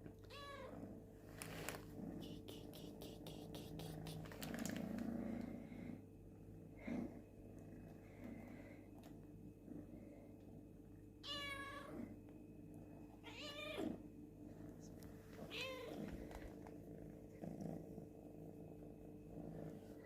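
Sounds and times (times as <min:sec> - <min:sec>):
cat meowing: 0:00.3 - 0:00.7, 0:13.2 - 0:13.9, 0:15.5 - 0:16.0.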